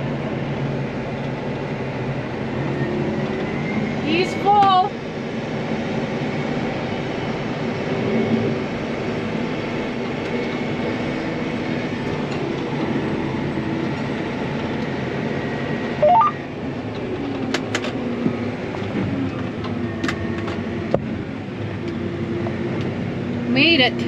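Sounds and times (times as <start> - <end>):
electronic beeps: 16.0 - 16.4.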